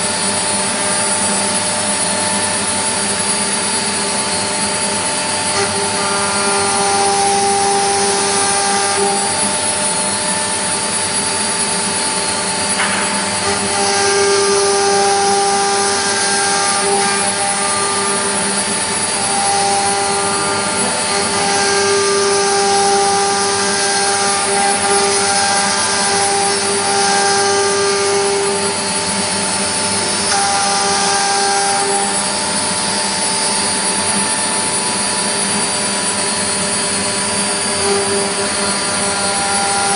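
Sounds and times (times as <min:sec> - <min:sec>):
milling machine spindle whir: 0:00.0 - 0:39.9
stepper motor whines: 0:00.0 - 0:39.9
brief knock: 0:12.8 - 0:13.2.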